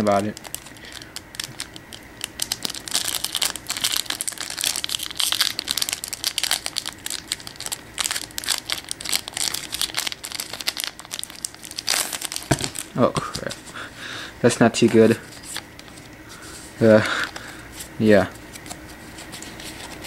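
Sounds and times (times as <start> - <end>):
foil wrapper crinkling: 0.0 - 13.9.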